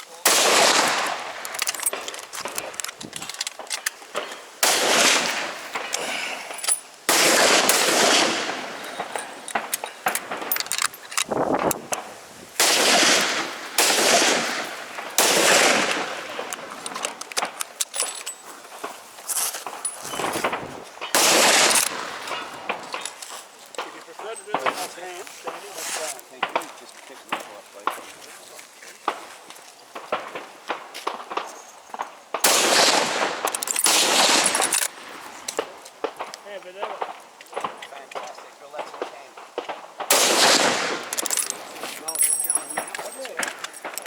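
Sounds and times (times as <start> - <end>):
rifle shots with rolling echo: 0.2 - 2.9, 3.6 - 5.9, 7.1 - 10.9, 11.9 - 17.6, 19.8 - 23.1, 30.0 - 44.0
distant gunshots: 0.3 - 2.0, 4.6 - 5.9, 7.1 - 10.5, 12.6 - 16.5, 20.4 - 22.9, 32.4 - 34.7, 39.5 - 41.7.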